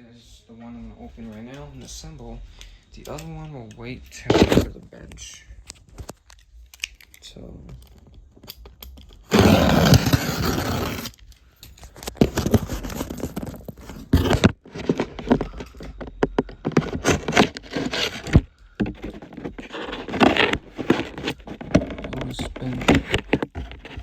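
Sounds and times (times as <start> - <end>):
cardboard and packaging rustling: 0.6 - 24.0
cardboard ripping: 9.3 - 11.2, 12.1 - 15.4, 16.8 - 24.0.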